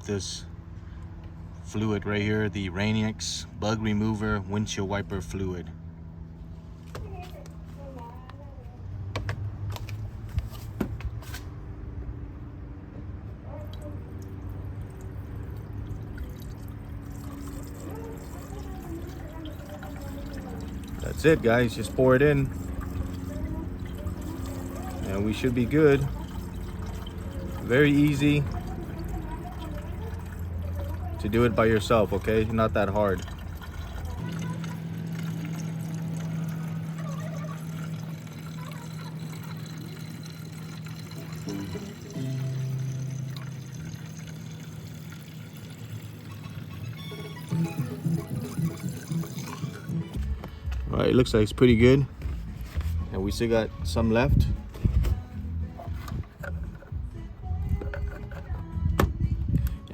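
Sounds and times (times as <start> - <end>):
fluid pouring from a jug: 13.8 - 50.2
low hum: 14.0 - 59.8.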